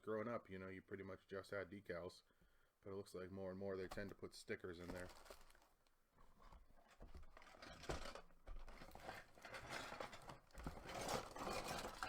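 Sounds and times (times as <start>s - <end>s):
packaging and paper crinkling: 4.8s - 12.0s.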